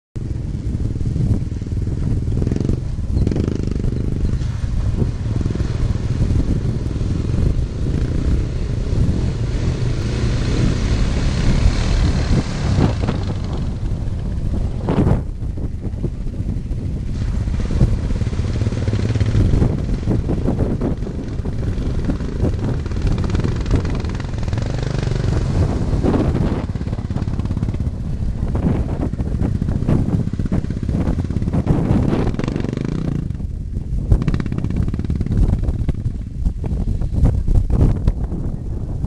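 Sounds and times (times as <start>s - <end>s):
quad engines revving: 5.3s - 13.9s, 21.2s - 27.8s, 30.4s - 33.4s.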